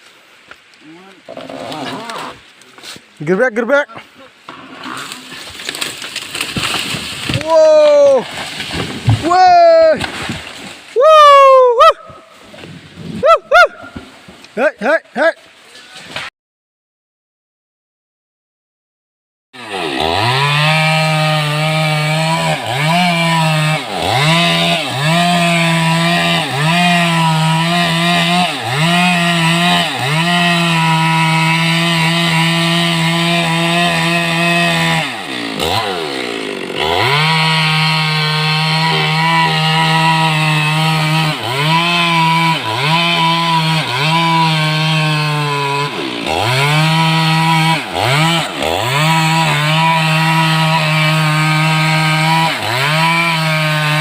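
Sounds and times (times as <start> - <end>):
chainsaw running: 19.6 - 54.0.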